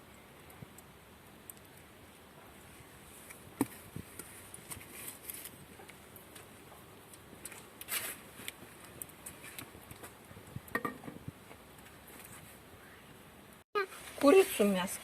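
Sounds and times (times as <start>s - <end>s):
rustling: 2.7s - 6.5s, 7.4s - 10.2s.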